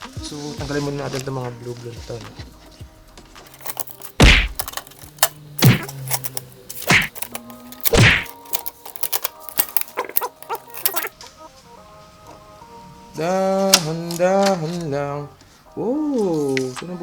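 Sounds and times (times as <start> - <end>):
loud thunks on printer: 4.2 - 4.7.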